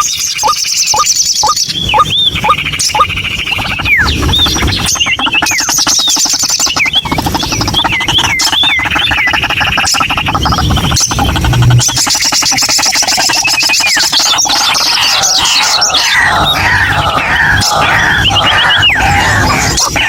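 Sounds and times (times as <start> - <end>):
high whistled bird notes: 0.0 - 12.6
harsh bird chatter: 0.0 - 20.0
waterhen rapid pulsing call: 0.0 - 20.0.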